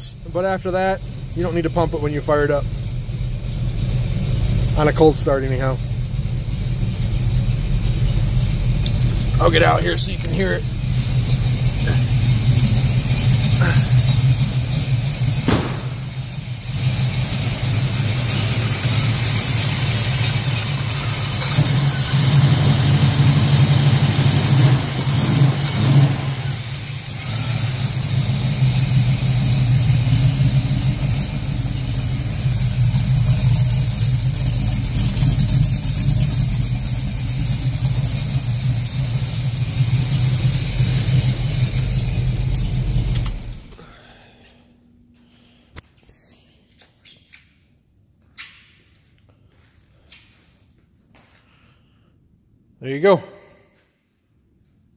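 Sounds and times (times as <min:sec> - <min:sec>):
car engine running: 0:00.0 - 0:43.8.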